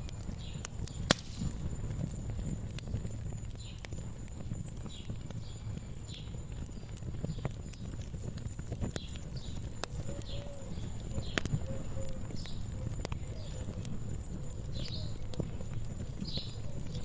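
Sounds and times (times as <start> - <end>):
wood fire crackling: 0.0 - 17.0
bird chirping: 4.8 - 17.0.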